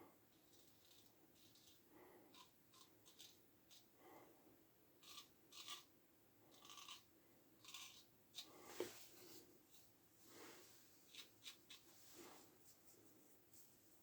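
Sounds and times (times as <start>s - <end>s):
razor scraping stubble: 5.0s - 5.9s, 6.5s - 8.7s.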